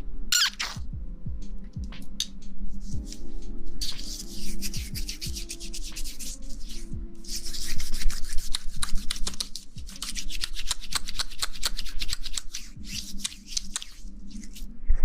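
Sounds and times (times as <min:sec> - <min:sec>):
asmr rustling and scratching: 0:02.8 - 0:14.7.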